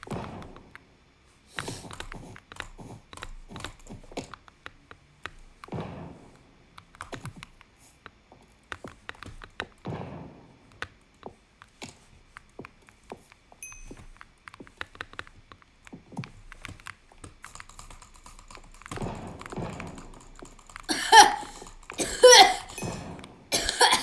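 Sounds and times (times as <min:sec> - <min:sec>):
breathing: 0:01.4 - 0:03.6
light clicks and taps: 0:01.6 - 0:05.9, 0:06.8 - 0:10.0, 0:10.7 - 0:20.9
person coughing hard: 0:20.9 - 0:24.0.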